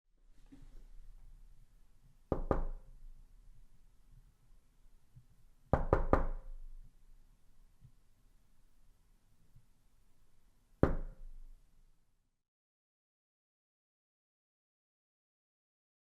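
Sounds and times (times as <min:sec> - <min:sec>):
knocking on a door: 0:02.3 - 0:02.8, 0:05.7 - 0:06.5, 0:10.8 - 0:11.2.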